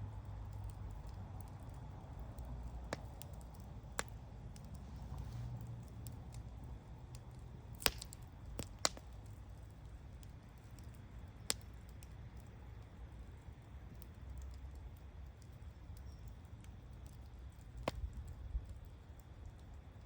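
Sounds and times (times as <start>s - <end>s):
bonfire crackling: 0.0s - 20.0s
sharp pops of fire: 0.3s - 12.8s, 13.8s - 19.8s.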